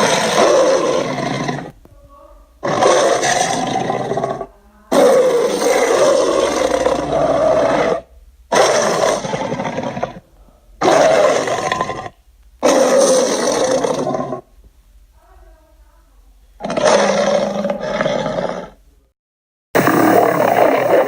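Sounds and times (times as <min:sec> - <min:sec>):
dinosaur roars: 0:00.0 - 0:01.7, 0:02.6 - 0:10.2, 0:10.8 - 0:14.4, 0:16.6 - 0:18.8, 0:19.8 - 0:21.0.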